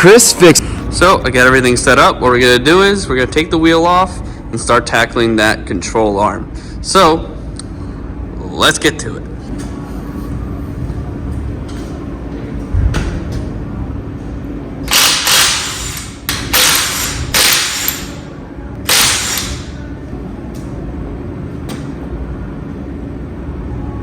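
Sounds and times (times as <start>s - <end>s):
steady low hum: 0.0s - 24.0s
impact wrench bursts: 14.9s - 18.3s, 18.9s - 19.8s.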